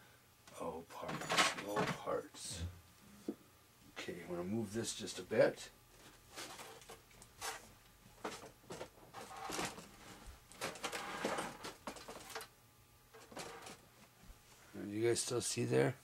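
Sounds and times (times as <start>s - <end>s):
items rustling and scraping: 5.9s - 12.5s, 13.1s - 14.7s.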